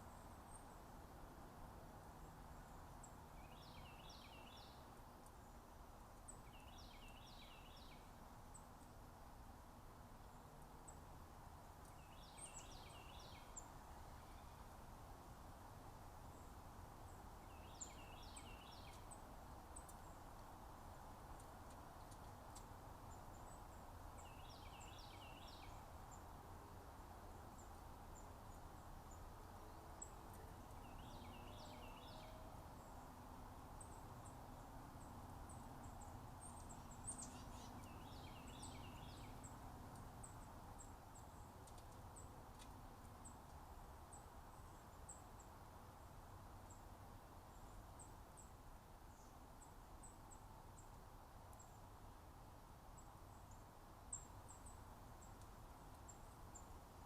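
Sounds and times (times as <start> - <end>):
songbird singing: 0.0 - 57.0
faint high ticks: 21.3 - 22.7, 41.6 - 43.6.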